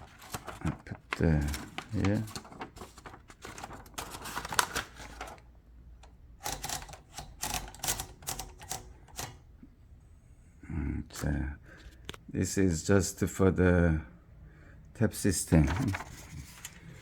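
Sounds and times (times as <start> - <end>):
typewriter mechanism clicking: 6.0 - 9.4.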